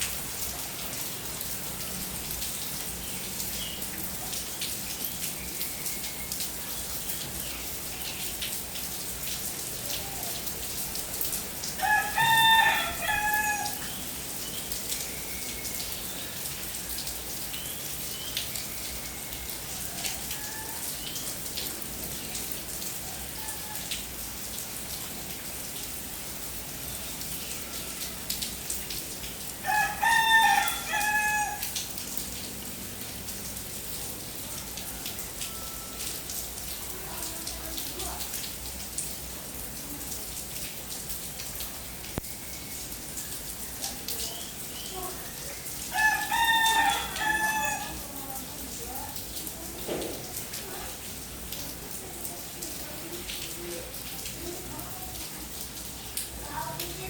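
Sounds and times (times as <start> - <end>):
steady rain falling: 0.0 - 57.0
rooster crowing: 11.8 - 13.9, 19.8 - 20.9, 29.6 - 31.8, 45.9 - 48.1.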